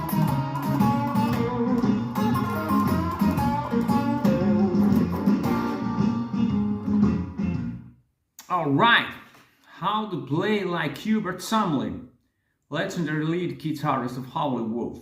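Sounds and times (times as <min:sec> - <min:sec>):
electric guitar playing blues: 0:00.0 - 0:07.8.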